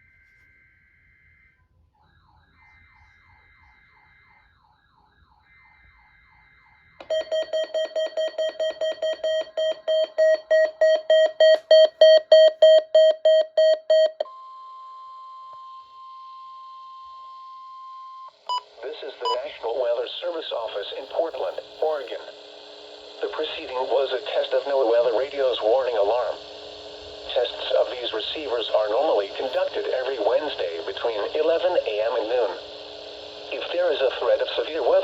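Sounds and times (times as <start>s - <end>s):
radio alert alarm beeping: 7.0s - 14.2s, 18.5s - 35.0s
warbling data tones: 18.5s - 35.0s.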